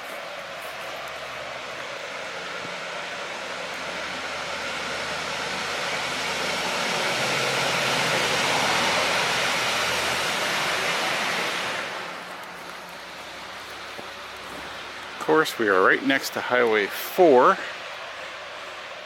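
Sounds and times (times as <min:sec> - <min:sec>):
vehicle passing on highway: 0:00.0 - 0:19.0.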